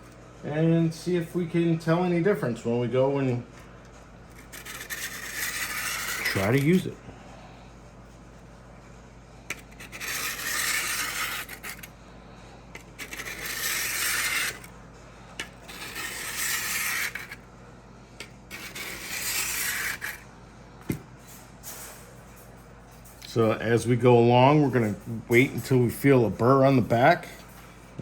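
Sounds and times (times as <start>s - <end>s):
blade scraping on sharpening plate: 4.3s - 6.7s, 9.5s - 11.9s, 12.8s - 14.7s, 15.4s - 17.4s, 18.5s - 20.2s.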